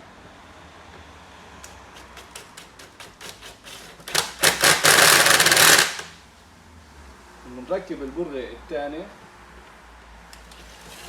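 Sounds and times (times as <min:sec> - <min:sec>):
screwdriver clicking: 0:01.6 - 0:06.1
rapid clicking rattle: 0:03.2 - 0:06.2.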